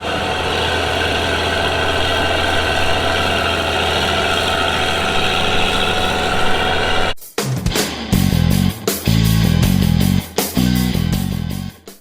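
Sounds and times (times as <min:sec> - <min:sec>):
vehicle engine idling: 0:00.0 - 0:07.2.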